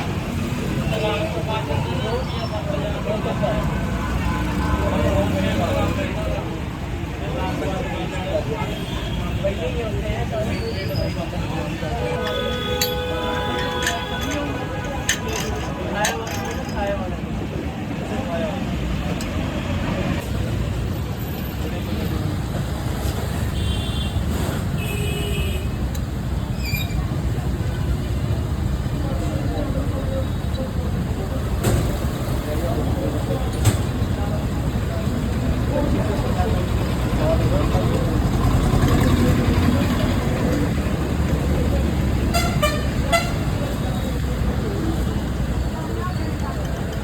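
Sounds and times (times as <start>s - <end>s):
road traffic rumble: 0.0s - 47.0s
vehicle horn honking: 12.0s - 14.8s, 42.3s - 43.5s
falling squeak: 26.5s - 27.1s.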